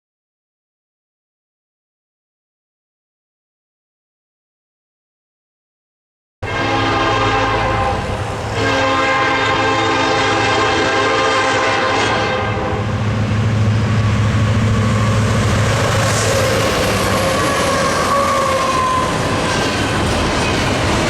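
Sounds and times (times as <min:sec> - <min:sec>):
locomotive horn chord blasts: 0:06.4 - 0:13.1
locomotive engines droning: 0:06.4 - 0:21.0
train wheels on rails: 0:06.5 - 0:21.0.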